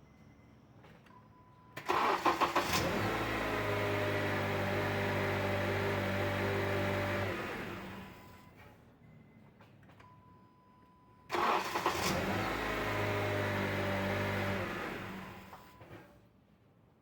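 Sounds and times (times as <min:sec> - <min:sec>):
car starter cranking: 0:01.8 - 0:03.0, 0:11.3 - 0:12.5.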